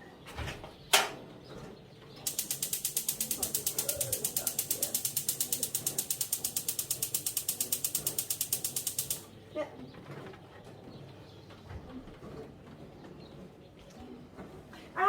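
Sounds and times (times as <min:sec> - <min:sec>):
fast even oven clicking: 0:02.3 - 0:09.3.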